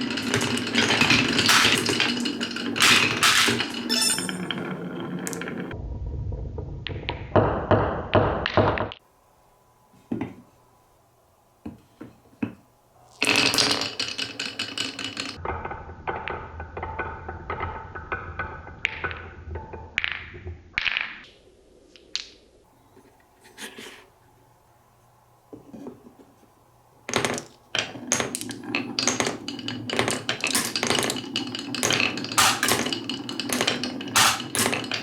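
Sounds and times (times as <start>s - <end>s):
marbles rolling on wooden tracks: 0.0s - 5.8s, 12.4s - 21.3s, 27.0s - 35.0s.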